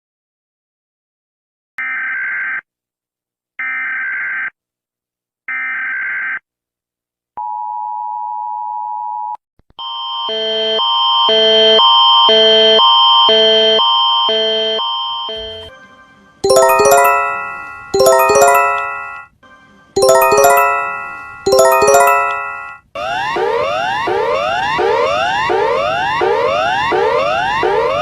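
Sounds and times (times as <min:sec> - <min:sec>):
alternating alert chords: 0:16.4 - 0:19.2, 0:20.0 - 0:22.8
two-tone attention signal: 0:16.4 - 0:19.2.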